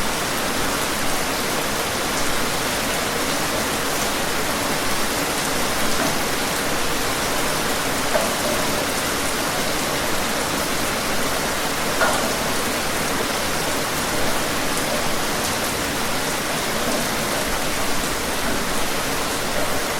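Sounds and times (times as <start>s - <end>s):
steady rain falling: 0.0s - 19.9s.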